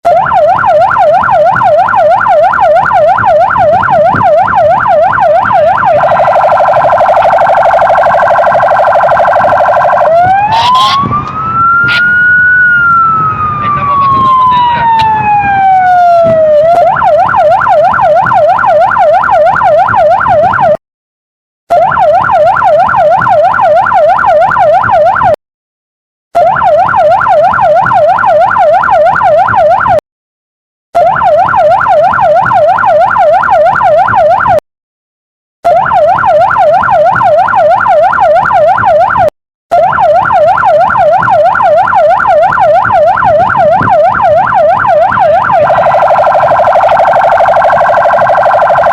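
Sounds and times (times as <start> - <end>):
police siren wailing and yelping: 0.0 - 20.8, 21.7 - 25.4, 26.3 - 30.0, 31.0 - 34.6, 35.6 - 48.9.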